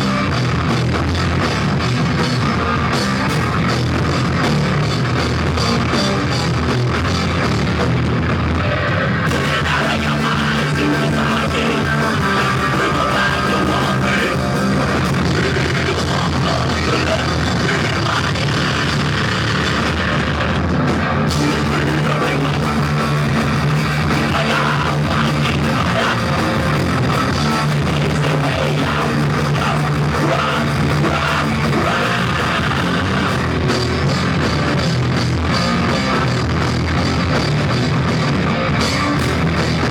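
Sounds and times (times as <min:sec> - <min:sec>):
rock band playing live: 0:00.0 - 0:39.9
person singing: 0:09.3 - 0:19.0, 0:21.3 - 0:33.7.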